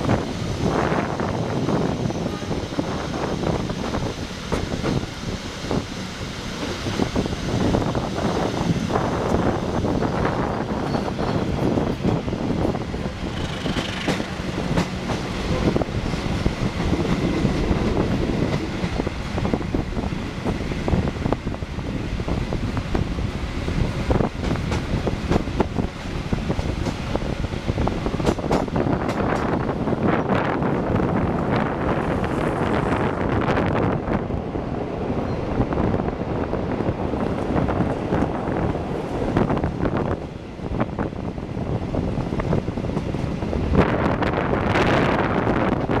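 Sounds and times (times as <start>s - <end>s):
train wheels rumbling on rails: 0.0s - 46.0s
wheels clicking over rail joints: 13.1s - 15.8s.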